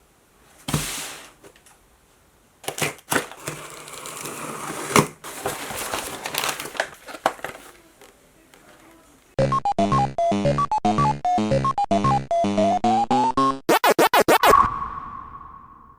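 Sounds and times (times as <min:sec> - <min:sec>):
packaging rustling and crinkling: 0:02.6 - 0:09.1
knocks of handling: 0:04.9 - 0:09.0.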